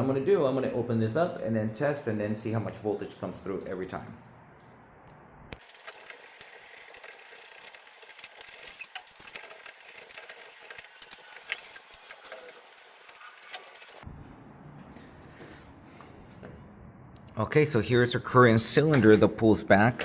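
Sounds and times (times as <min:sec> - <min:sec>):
hand tools clicking and rattling: 0:02.5 - 0:02.8, 0:05.6 - 0:14.0.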